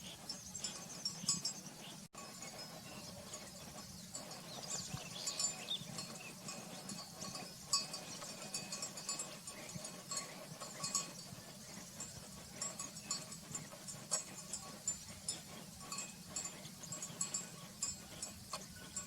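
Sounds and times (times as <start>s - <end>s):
birds chirping and trilling: 0.0s - 11.8s
thin steady tones: 0.0s - 19.0s.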